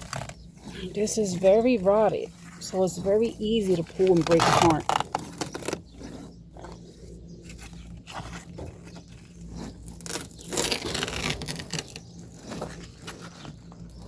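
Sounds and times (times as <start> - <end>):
rotted material being torn apart: 0.0 - 0.4, 4.0 - 6.3, 7.5 - 14.0.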